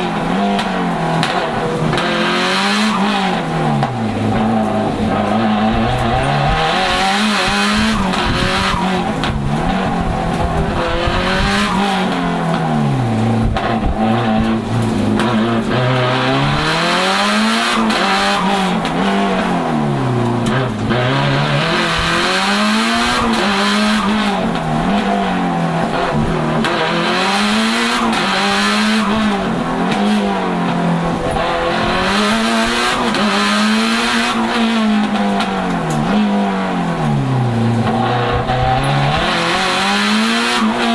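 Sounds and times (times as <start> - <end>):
car engine revving: 0.0 - 40.9.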